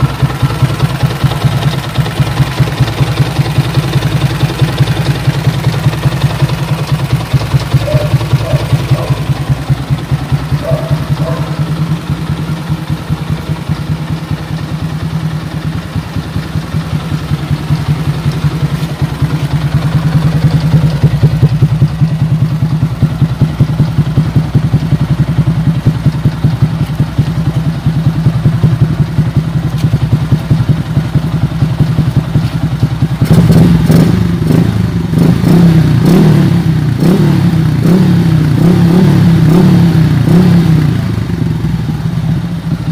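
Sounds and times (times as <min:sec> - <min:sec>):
motorcycle engine running: 0:00.0 - 0:42.9.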